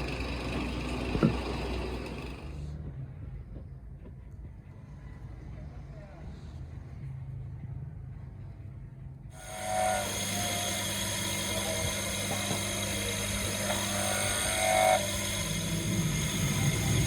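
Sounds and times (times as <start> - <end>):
power tool high whine: 9.4 - 17.0.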